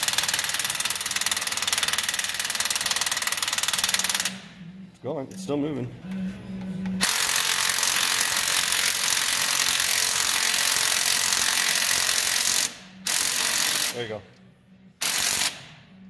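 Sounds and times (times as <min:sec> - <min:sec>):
power wrench rattling: 0:00.0 - 0:04.4.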